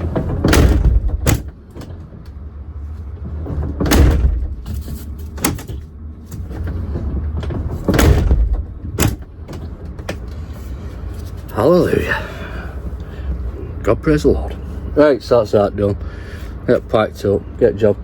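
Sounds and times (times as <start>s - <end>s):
door latch and handle clicks: 0.0s - 2.0s, 3.8s - 6.5s, 7.9s - 10.2s
heavy truck door thudding shut: 0.0s - 2.2s, 3.4s - 10.0s.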